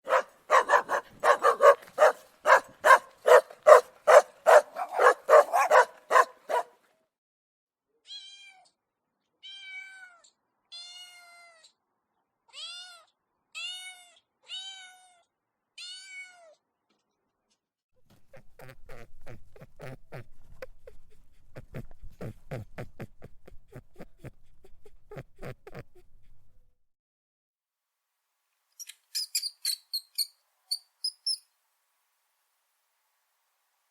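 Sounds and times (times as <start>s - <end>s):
dog barking rapidly: 0.0s - 6.8s
cat meowing: 9.4s - 11.7s, 12.5s - 16.6s.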